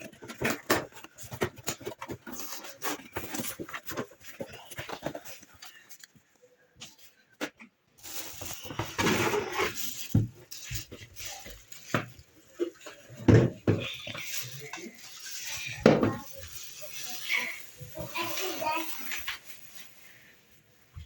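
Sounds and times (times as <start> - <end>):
blender parts clattering and knocking: 0.0 - 5.4.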